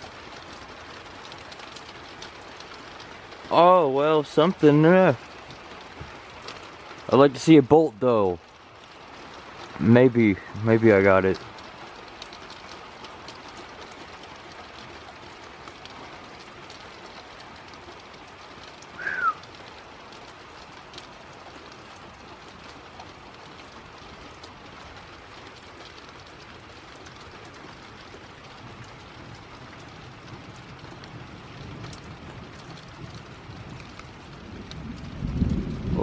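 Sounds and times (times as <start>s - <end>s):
steady rain falling: 0.0s - 36.0s
faint drips: 8.1s - 35.1s.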